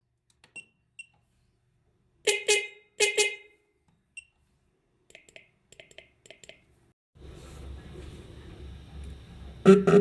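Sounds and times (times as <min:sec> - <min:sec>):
electric car horn blasts: 0:09.7 - 0:10.0.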